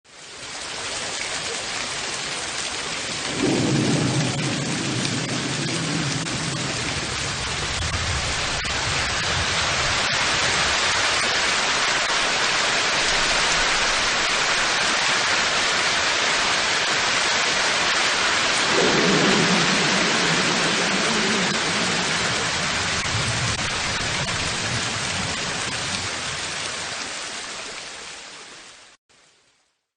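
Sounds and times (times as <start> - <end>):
heavy rain: 0.1 - 29.7
thunder rumble: 3.3 - 10.7, 18.5 - 26.4.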